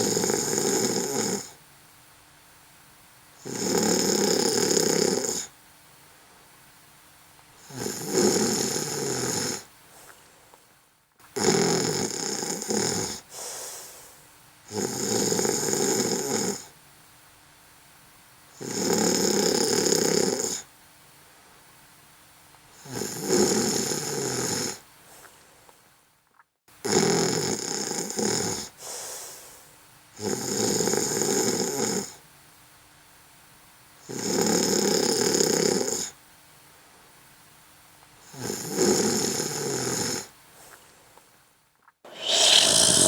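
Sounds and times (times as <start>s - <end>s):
person snoring: 42.1s - 43.0s.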